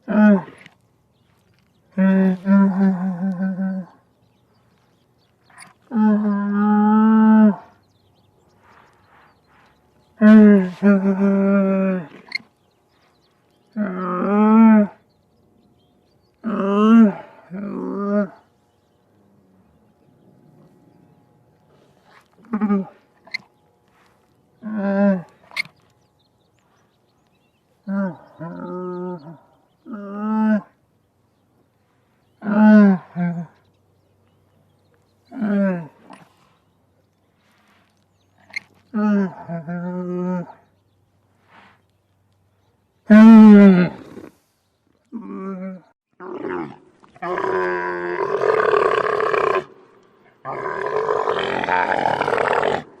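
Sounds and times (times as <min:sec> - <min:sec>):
camel groaning: 0:00.0 - 0:04.1, 0:05.4 - 0:07.9, 0:08.6 - 0:13.0, 0:13.7 - 0:15.1, 0:16.4 - 0:18.6, 0:19.2 - 0:25.9, 0:27.8 - 0:30.8, 0:32.4 - 0:33.6, 0:35.2 - 0:36.6, 0:37.6 - 0:40.8, 0:43.0 - 0:44.5, 0:45.1 - 0:53.0.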